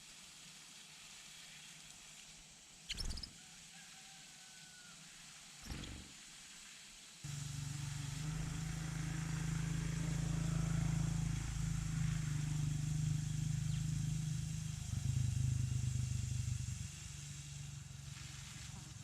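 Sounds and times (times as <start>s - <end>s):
low motor hum: 7.3s - 19.0s.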